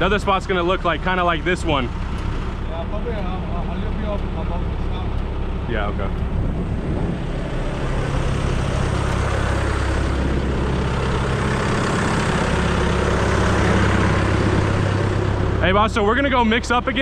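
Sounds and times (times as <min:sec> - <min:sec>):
heavy engine humming: 0:00.0 - 0:17.0.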